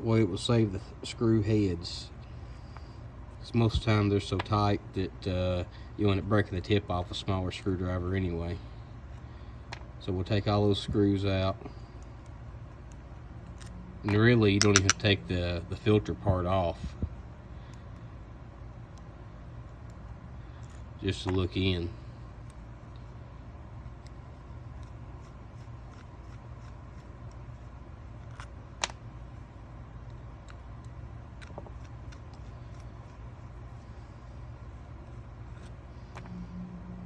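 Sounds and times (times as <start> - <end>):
low hum and hiss: 0.0 - 37.0
screwdriver clicks on metal parts: 12.2 - 15.1.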